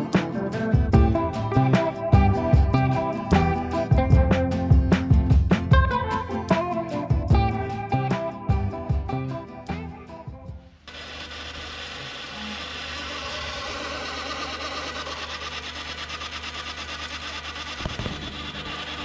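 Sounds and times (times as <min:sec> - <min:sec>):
tape mechanism whirring: 0:10.8 - 0:19.0.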